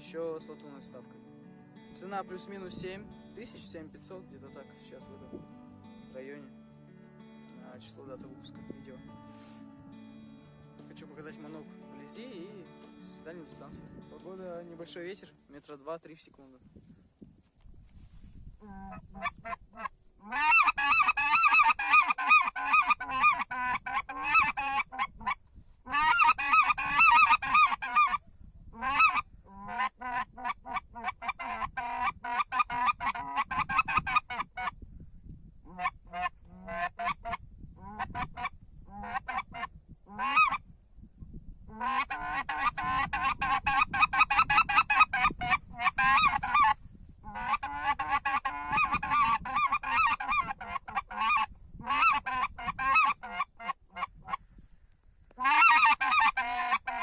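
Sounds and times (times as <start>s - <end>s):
goose call honks and clucks: 18.6s - 34.8s, 35.6s - 40.6s, 41.7s - 54.4s, 55.4s - 57.0s.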